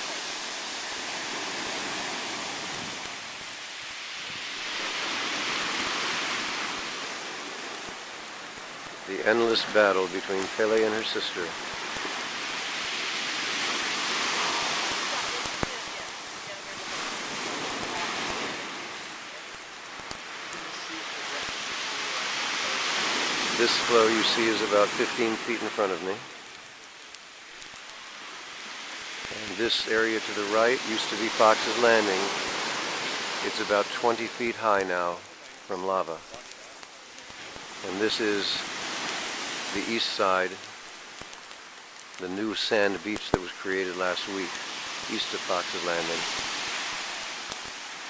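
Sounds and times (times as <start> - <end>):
hiss of surf and steam: 0.0 - 48.0
ocean waves rushing: 0.0 - 48.0.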